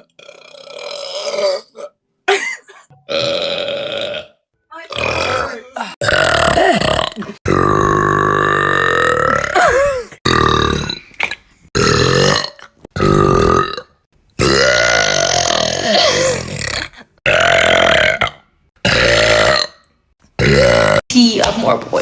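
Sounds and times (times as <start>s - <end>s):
girls burping: 0.2s - 11.0s, 11.8s - 19.8s.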